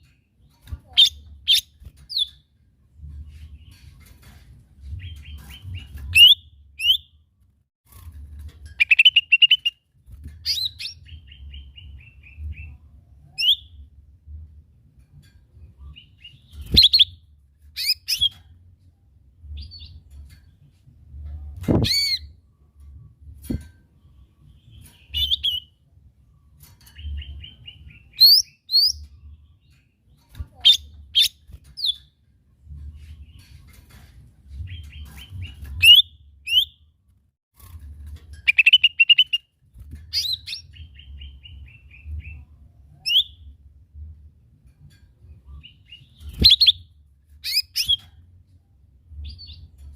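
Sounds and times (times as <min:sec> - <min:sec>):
bird chirping and whistling: 0:05.2 - 0:07.1, 0:16.6 - 0:17.2, 0:17.8 - 0:18.3, 0:21.8 - 0:22.3, 0:25.1 - 0:25.7, 0:27.0 - 0:29.0, 0:34.7 - 0:36.8, 0:38.5 - 0:39.4, 0:40.1 - 0:42.4, 0:43.0 - 0:43.4, 0:46.0 - 0:48.0.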